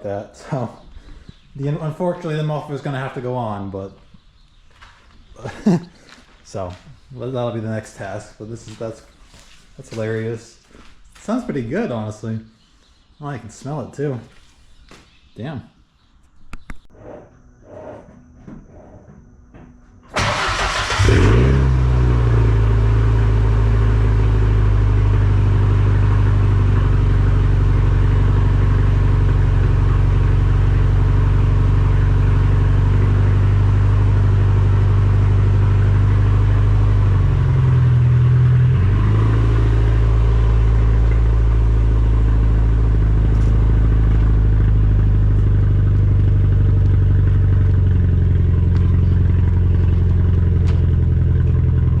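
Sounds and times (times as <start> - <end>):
engine cranking and starting: 20.1 - 22.4
loud engine idling: 20.2 - 52.0.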